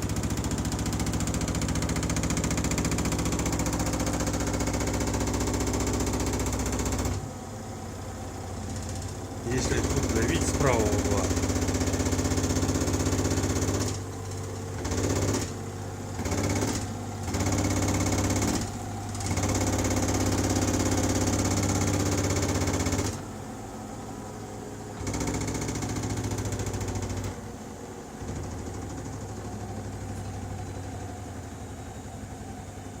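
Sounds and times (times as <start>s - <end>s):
machine knocking rattle: 0.0s - 7.2s, 8.6s - 23.2s, 25.0s - 27.4s.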